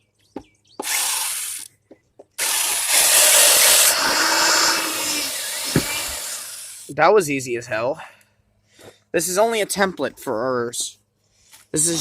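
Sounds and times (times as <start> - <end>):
electric hand drill boring: 0.8 - 1.7, 2.4 - 6.9.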